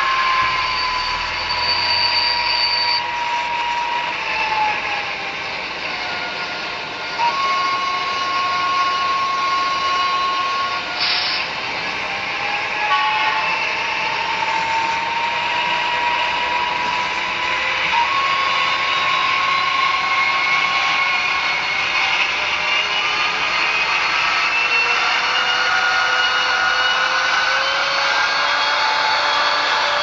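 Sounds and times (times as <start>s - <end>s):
tinny diesel engine drone: 0.0s - 30.0s.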